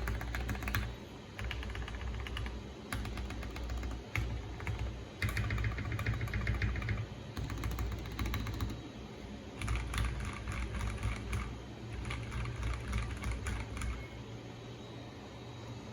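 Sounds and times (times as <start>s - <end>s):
fast mechanical keyboard typing: 0.0s - 8.8s, 9.5s - 14.1s.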